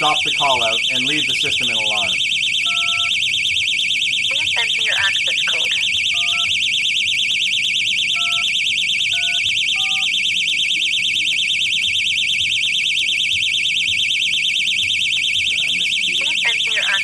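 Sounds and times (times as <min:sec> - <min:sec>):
warbling alarm siren: 0:00.0 - 0:17.0
keypad touch-tones: 0:02.7 - 0:03.2, 0:04.3 - 0:06.6, 0:08.1 - 0:08.6, 0:09.2 - 0:11.4, 0:15.5 - 0:17.0.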